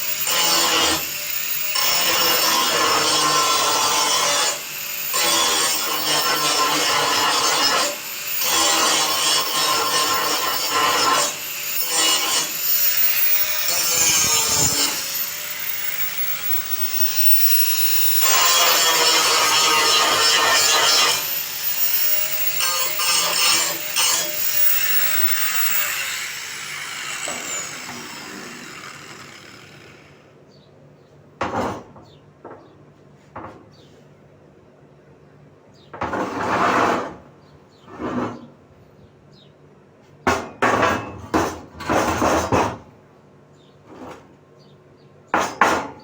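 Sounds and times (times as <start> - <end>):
power tool cutting: 0.0 - 30.2
knocks and scrapes of hand work: 31.4 - 33.9, 35.9 - 37.2.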